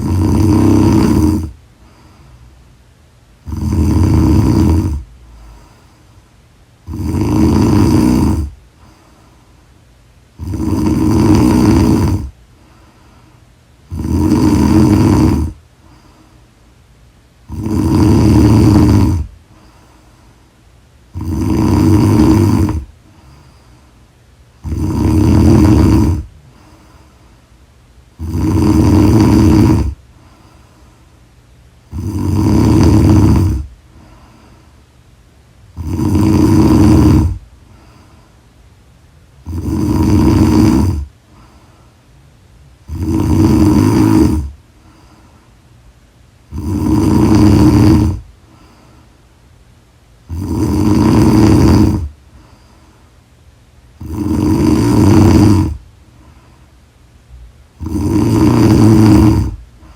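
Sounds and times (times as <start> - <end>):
woman snoring loudly: 0.0 - 1.6, 3.4 - 5.1, 6.8 - 8.6, 10.4 - 12.4, 13.9 - 15.6, 17.4 - 19.3, 21.1 - 22.9, 24.6 - 26.3, 28.2 - 30.0, 31.9 - 33.7, 35.7 - 37.4, 39.4 - 41.1, 42.8 - 44.6, 46.5 - 48.3, 50.2 - 52.1, 54.0 - 55.8, 57.8 - 59.6.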